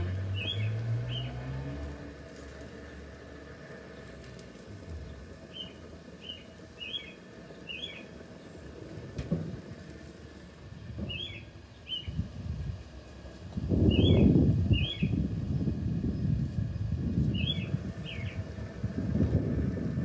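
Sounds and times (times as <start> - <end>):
small bird chirping: 0.3 - 1.4, 5.0 - 8.6, 11.1 - 12.2, 13.9 - 15.2, 17.3 - 18.4.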